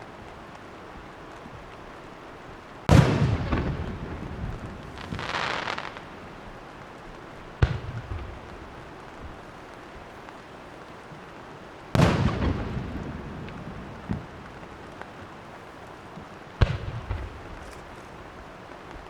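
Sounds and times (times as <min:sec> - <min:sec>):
fireworks booming: 0:02.8 - 0:10.4, 0:11.9 - 0:19.0
rushing hiss: 0:02.9 - 0:06.5.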